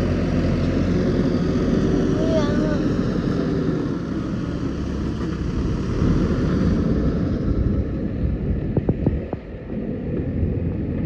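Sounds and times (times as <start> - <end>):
diesel engine rumbling: 0.0 - 11.0.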